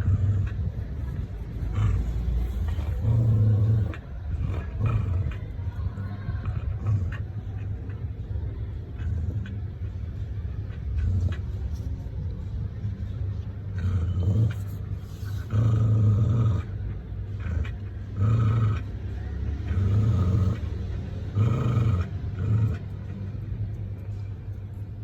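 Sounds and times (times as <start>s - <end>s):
dog growling: 0.0s - 12.3s, 13.4s - 25.0s.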